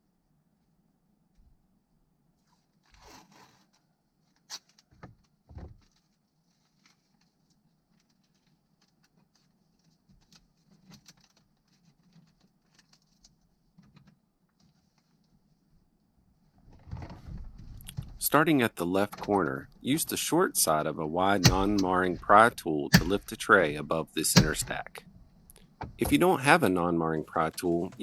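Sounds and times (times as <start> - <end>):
sharp clicks and taps: 21.4 - 22.3, 22.9 - 23.4.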